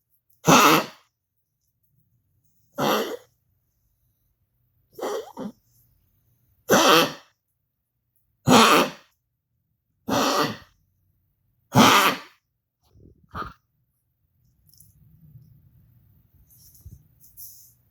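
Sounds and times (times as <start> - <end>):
animal coughing: 0.4 - 1.1, 2.8 - 3.3, 4.9 - 5.6, 6.7 - 7.4, 8.5 - 9.1, 10.1 - 10.8, 11.7 - 12.4, 13.3 - 13.6.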